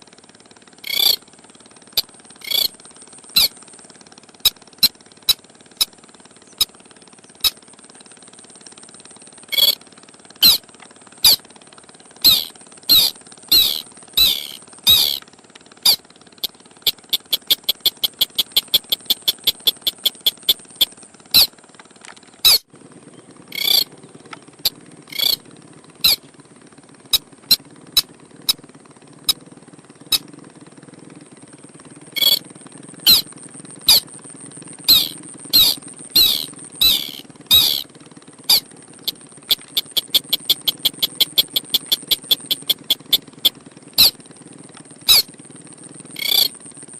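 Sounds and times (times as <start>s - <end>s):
crake calling squeaky notes: 0.8s - 1.2s, 2.4s - 2.7s, 9.5s - 9.8s, 12.2s - 15.2s, 16.9s - 21.5s, 22.4s - 22.6s, 23.5s - 23.9s, 25.1s - 25.4s, 32.2s - 32.4s, 34.9s - 37.8s, 38.5s - 44.2s, 45.1s - 45.3s, 46.2s - 46.6s.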